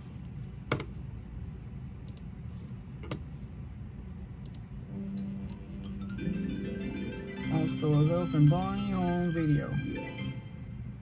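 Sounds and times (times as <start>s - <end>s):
tape playback hum and hiss: 0.0s - 11.0s
low steady tone: 4.9s - 11.0s.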